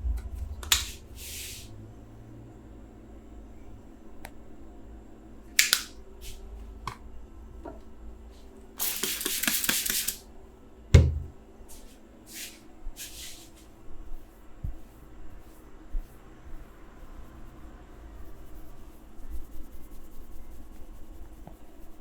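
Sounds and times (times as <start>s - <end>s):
hands rubbing hair and skin: 8.3s - 10.2s, 11.7s - 22.0s
slap thump: 11.0s - 11.3s.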